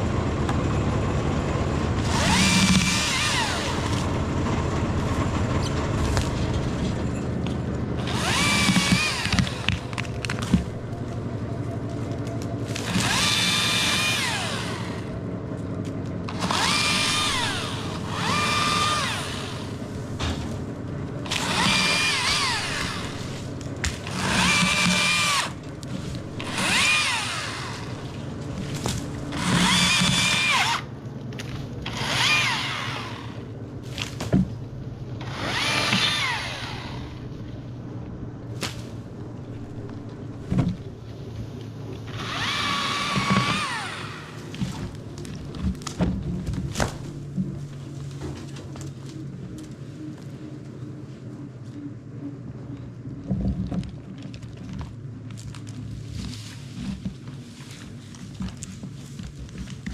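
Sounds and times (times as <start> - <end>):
steady low hum: 0.0 - 59.9
electric chainsaw motor whine: 2.0 - 4.2, 8.0 - 10.7, 12.7 - 15.2, 16.3 - 20.1, 21.2 - 30.9, 31.8 - 33.5, 35.2 - 37.4, 42.0 - 44.9.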